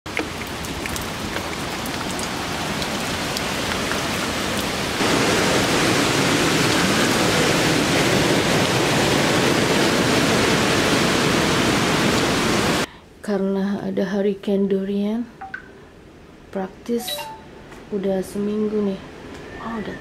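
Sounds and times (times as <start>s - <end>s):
heavy rain: 0.1s - 12.9s.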